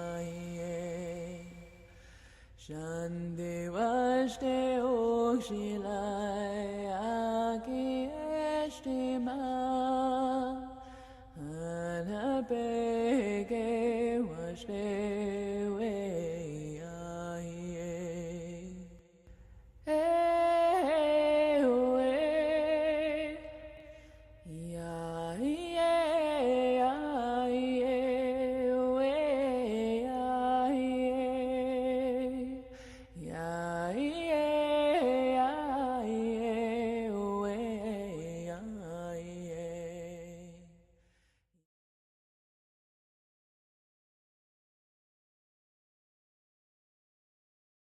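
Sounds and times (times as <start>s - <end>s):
woman singing chant-like melody: 0.0s - 1.8s, 19.9s - 40.6s.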